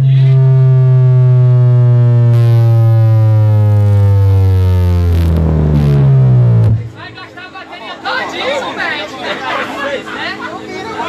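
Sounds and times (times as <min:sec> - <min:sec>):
low bass tone sliding down: 0:00.0 - 0:07.3.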